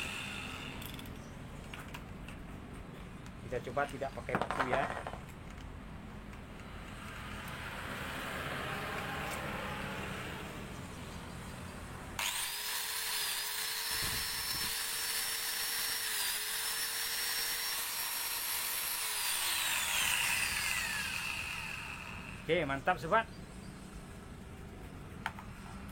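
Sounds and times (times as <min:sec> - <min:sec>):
angle grinder whining: 0:00.0 - 0:01.1, 0:12.2 - 0:22.6.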